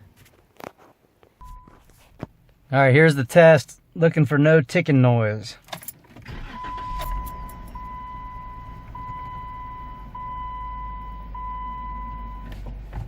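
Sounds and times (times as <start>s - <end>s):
electronic warning chime beeps: 1.4s - 1.8s, 6.5s - 12.4s
car engine idling: 5.9s - 13.0s.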